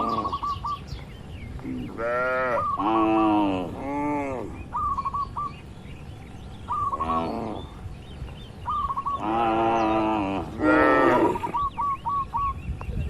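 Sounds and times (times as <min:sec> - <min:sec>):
bird chirping: 0:00.0 - 0:13.0
cattle mooing: 0:01.9 - 0:04.6, 0:09.2 - 0:11.6.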